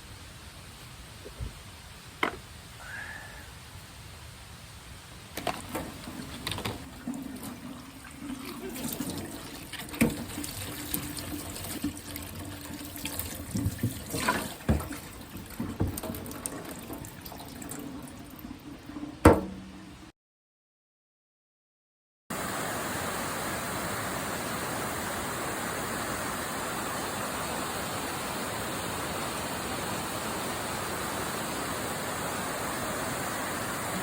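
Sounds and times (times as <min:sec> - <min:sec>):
tap water running into sink: 0:05.4 - 0:19.9.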